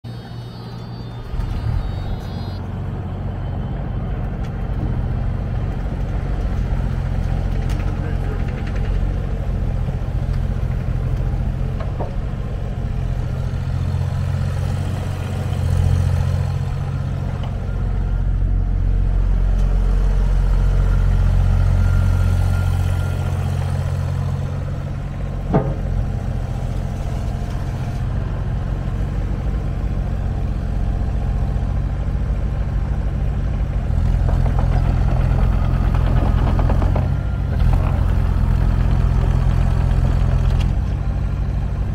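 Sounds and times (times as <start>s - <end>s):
excavator diesel engine running: 0.0s - 41.9s.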